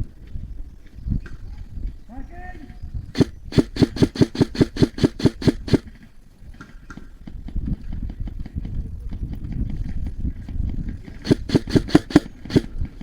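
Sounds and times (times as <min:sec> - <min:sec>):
airsoft gun rapid shots: 0:03.2 - 0:05.9, 0:11.2 - 0:12.8.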